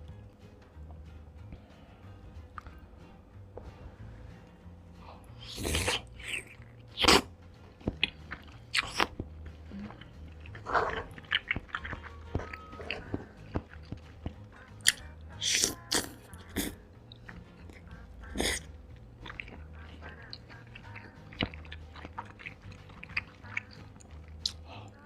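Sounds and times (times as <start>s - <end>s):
person biting and chewing food: 5.3s - 24.7s.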